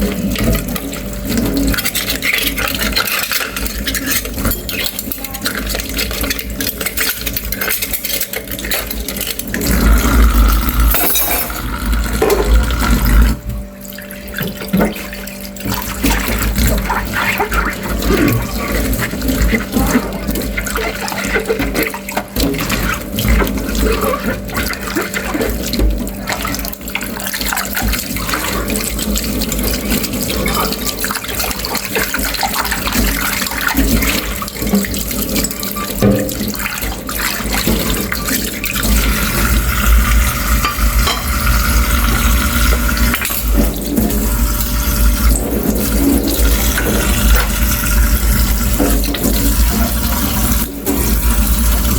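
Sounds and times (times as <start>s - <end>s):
water running from tap into sink: 0.0s - 51.9s.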